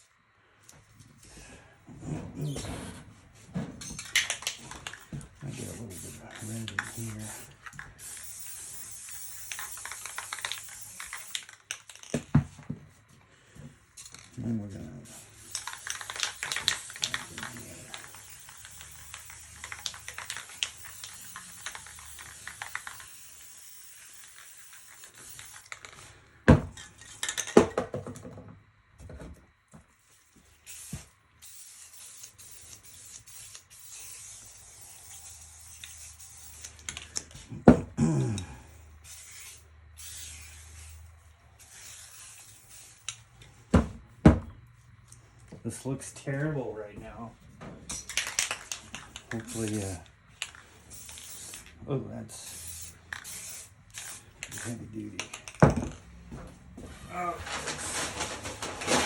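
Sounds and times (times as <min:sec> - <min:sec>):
spray paint can hissing: 0:03.8 - 0:12.4, 0:14.0 - 0:26.1, 0:30.1 - 0:37.5, 0:38.7 - 0:43.6, 0:47.9 - 0:55.7.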